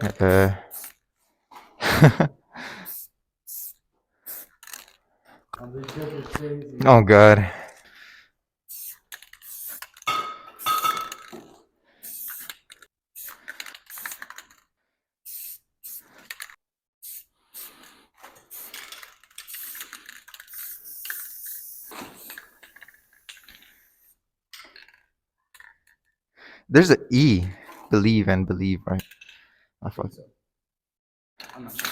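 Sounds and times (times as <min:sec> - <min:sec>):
hard objects clinking and scraping: 0:04.4 - 0:05.0, 0:17.7 - 0:24.0
hiss: 0:19.5 - 0:22.7.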